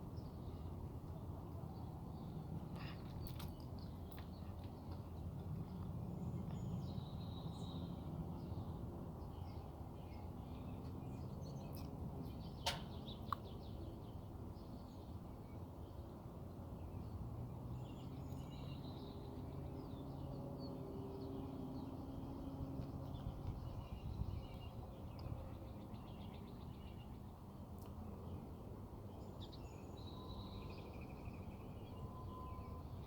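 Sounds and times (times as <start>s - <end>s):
aircraft rumbling overhead: 0.0s - 33.0s.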